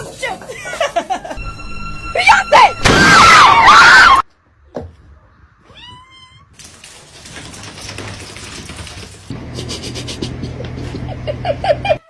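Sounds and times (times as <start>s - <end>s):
cat meowing: 5.6s - 6.5s.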